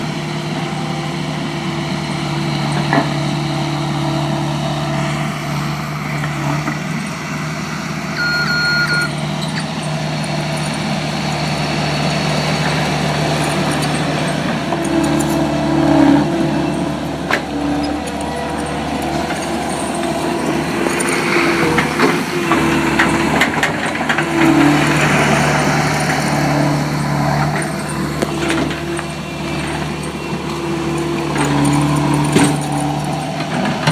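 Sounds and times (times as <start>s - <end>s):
diesel engine running: 0.0s - 33.9s
short beep: 8.2s - 9.2s
machine rattling and clanking: 12.6s - 33.9s.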